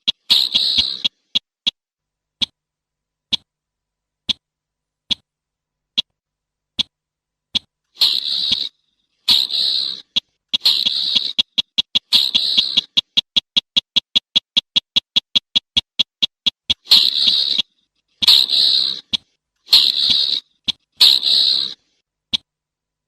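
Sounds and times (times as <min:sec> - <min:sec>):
bird calling harsh rasping bursts: 0:00.0 - 0:01.8, 0:07.6 - 0:22.0
sharp ticking bird notes: 0:00.0 - 0:01.8, 0:07.6 - 0:22.5.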